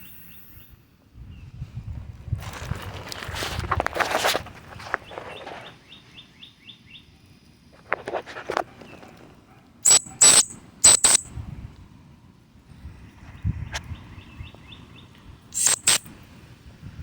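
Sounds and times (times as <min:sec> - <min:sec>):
bird chirping: 0:09.8 - 0:11.3, 0:14.2 - 0:16.0
sharp bursts with high tone: 0:09.8 - 0:11.3, 0:15.6 - 0:16.1.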